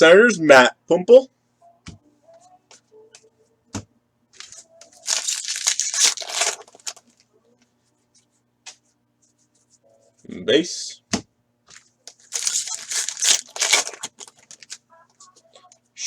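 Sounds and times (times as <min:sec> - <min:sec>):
foil wrapper tearing: 0:04.4 - 0:07.0, 0:12.3 - 0:14.8.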